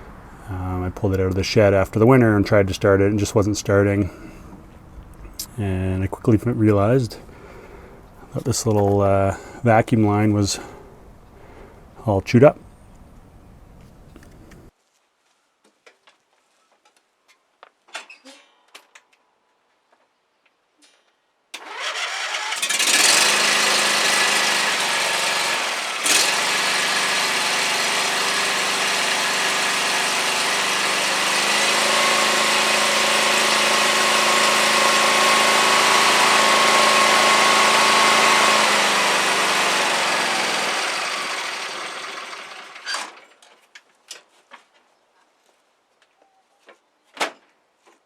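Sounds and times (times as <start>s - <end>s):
riding mower engine running: 21.6s - 43.2s.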